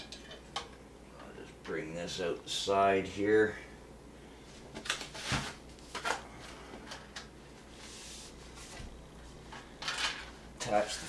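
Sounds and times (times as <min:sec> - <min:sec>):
soft sliding hiss: 0:07.5 - 0:11.0.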